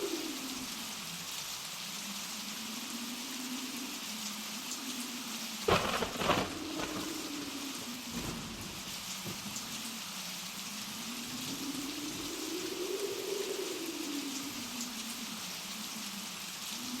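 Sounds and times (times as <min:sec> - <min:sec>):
wind howling: 0:05.6 - 0:10.0, 0:10.8 - 0:15.3.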